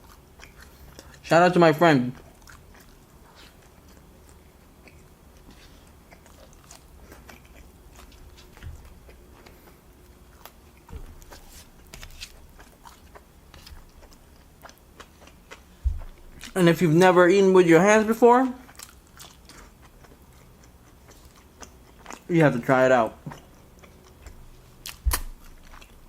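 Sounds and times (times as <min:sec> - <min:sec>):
wet mouth chewing clicks: 0:02.2 - 0:09.7, 0:18.7 - 0:22.3
soft low thuds: 0:15.8 - 0:16.5, 0:25.0 - 0:25.6.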